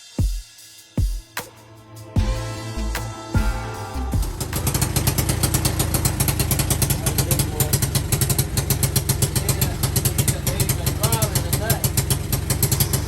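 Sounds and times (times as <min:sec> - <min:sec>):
atv engine running: 0:04.3 - 0:13.0.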